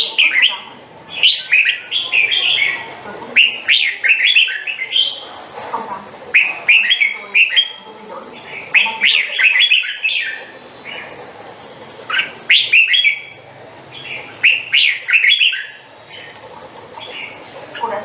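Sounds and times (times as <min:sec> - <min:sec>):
bird singing whistled notes: 0:00.2 - 0:02.8, 0:08.7 - 0:11.0, 0:12.1 - 0:13.4, 0:14.0 - 0:15.8.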